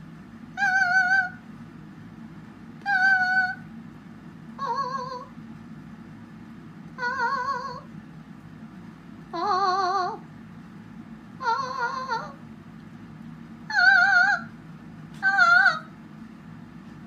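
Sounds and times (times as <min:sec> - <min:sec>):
parrot mimicking cat meows: 0:00.6 - 0:01.4, 0:02.9 - 0:03.6, 0:07.0 - 0:07.9, 0:11.4 - 0:12.4, 0:13.7 - 0:14.5, 0:15.2 - 0:15.9.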